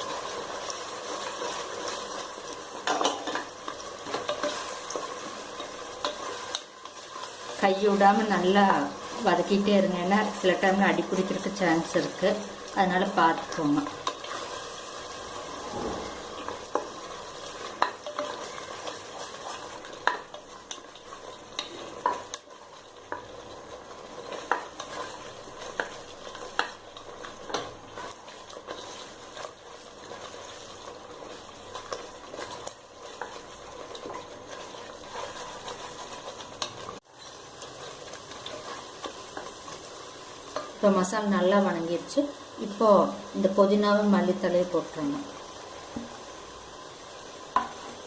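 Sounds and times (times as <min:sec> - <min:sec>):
paste sizzling in oil: 0:00.0 - 0:48.0.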